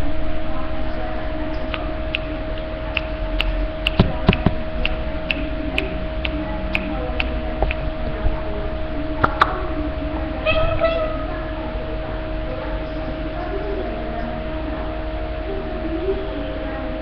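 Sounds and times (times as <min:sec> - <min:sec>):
steady hum: 0:00.0 - 0:17.0
regular ticking: 0:01.5 - 0:10.4.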